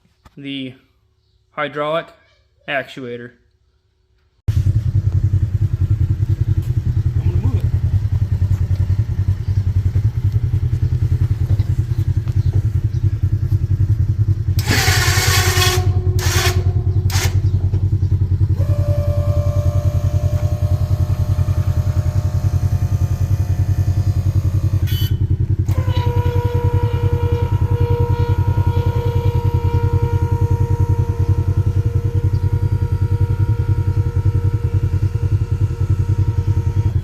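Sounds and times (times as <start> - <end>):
engine idling: 4.5 - 37.0
steady whine: 13.4 - 37.0.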